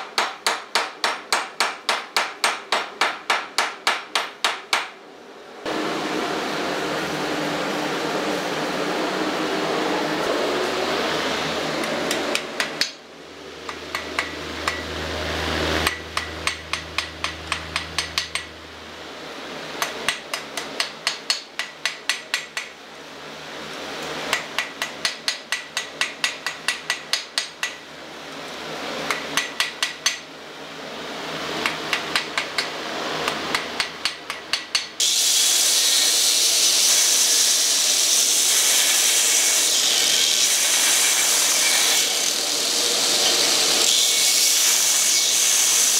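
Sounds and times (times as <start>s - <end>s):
hammer striking steel on anvil: 0.0s - 5.0s, 11.8s - 13.0s, 13.7s - 14.9s, 15.8s - 18.6s, 19.8s - 22.8s, 24.3s - 27.9s, 29.1s - 30.3s, 31.6s - 35.0s
power tool running: 35.0s - 45.9s.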